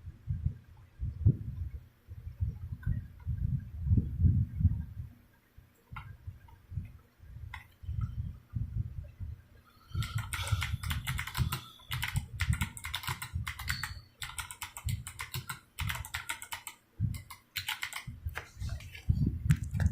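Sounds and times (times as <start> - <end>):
clicky keyboard typing: 9.9 - 18.1.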